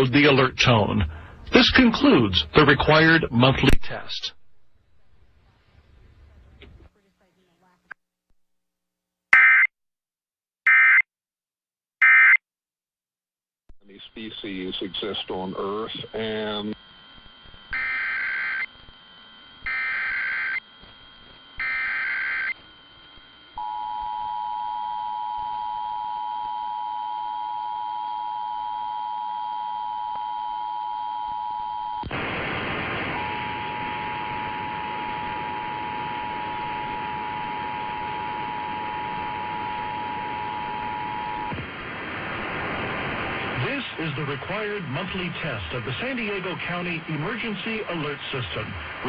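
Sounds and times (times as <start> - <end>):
screeching digital data bursts: 14.5 - 23.6
loud hiss: 32.0 - 39.3, 41.4 - 49.0.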